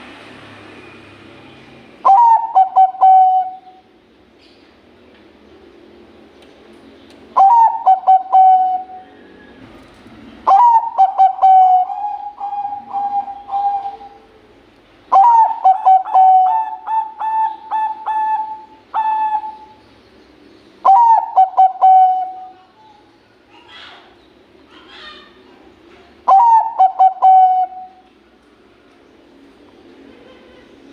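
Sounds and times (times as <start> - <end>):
dove cooing: 2.0 - 3.9, 7.4 - 14.5, 15.1 - 19.8, 20.8 - 22.8, 26.2 - 28.0.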